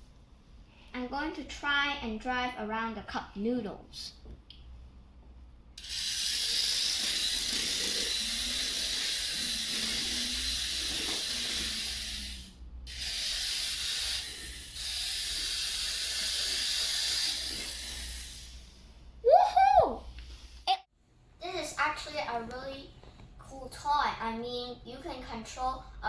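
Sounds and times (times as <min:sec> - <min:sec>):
toy car motor whirring: 0:05.8 - 0:18.9.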